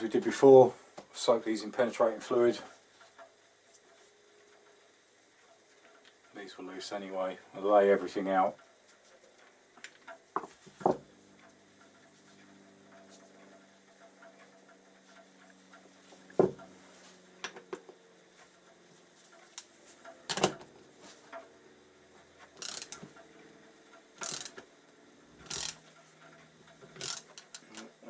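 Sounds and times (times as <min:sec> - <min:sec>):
metal parts clacking on workbench: 0:20.3 - 0:20.6
ratchet rasping: 0:22.4 - 0:23.3, 0:24.2 - 0:24.7, 0:25.4 - 0:28.0.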